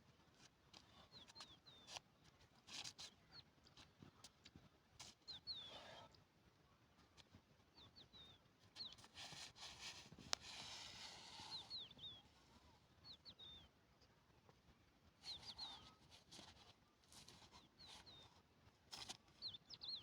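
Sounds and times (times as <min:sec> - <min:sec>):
faint bird chirping: 0:05.3 - 0:06.2, 0:07.7 - 0:09.2, 0:11.0 - 0:14.2, 0:15.2 - 0:18.4, 0:19.1 - 0:20.0.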